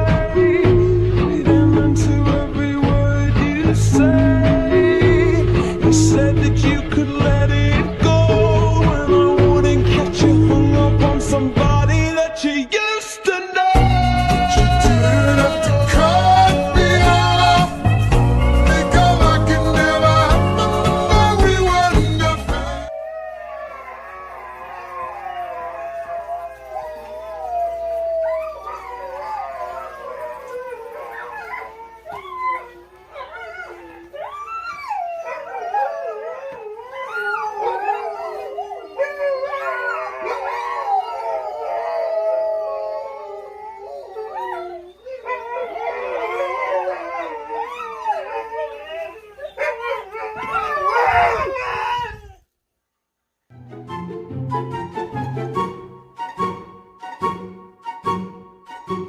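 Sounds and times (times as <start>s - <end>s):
dogs howling: 0.0s - 1.3s, 3.9s - 6.8s, 13.8s - 22.0s, 22.7s - 52.5s.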